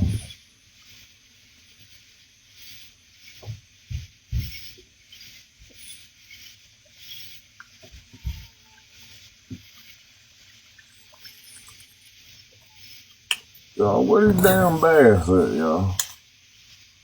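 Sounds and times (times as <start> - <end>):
faint high hiss: 0.0 - 17.0.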